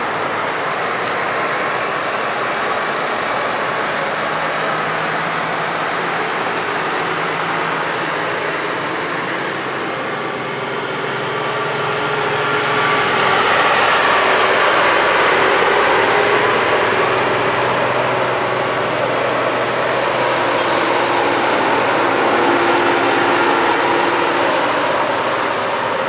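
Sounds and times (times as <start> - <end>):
farm machinery engines running: 0.0 - 26.0.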